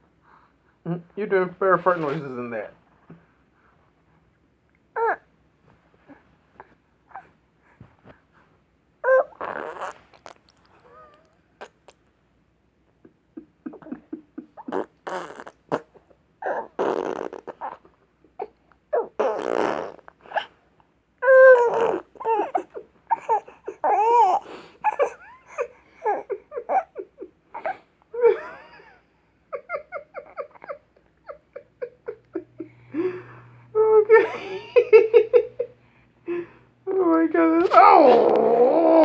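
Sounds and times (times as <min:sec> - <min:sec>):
blown lip raspberries: 0:09.1 - 0:12.1, 0:13.4 - 0:16.0, 0:37.6 - 0:39.0
laughter: 0:28.2 - 0:32.8, 0:34.2 - 0:35.7.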